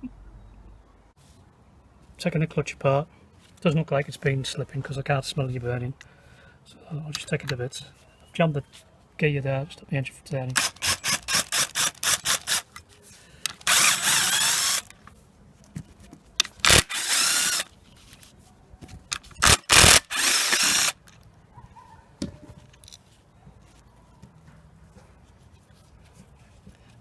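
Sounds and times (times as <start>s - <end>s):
power drill spinning: 10.6s - 12.8s, 13.5s - 15.0s, 16.6s - 17.7s, 19.4s - 21.1s.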